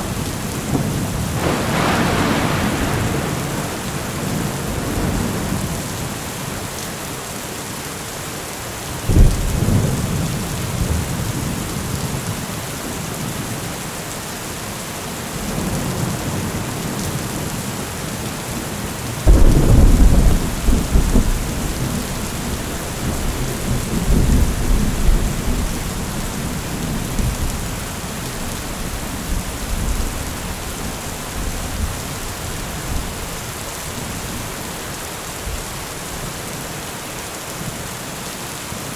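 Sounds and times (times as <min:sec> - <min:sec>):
thunder clap and rumble: 0:00.0 - 0:06.6, 0:09.1 - 0:13.1, 0:19.2 - 0:34.6
heavy rain falling: 0:00.0 - 0:38.9.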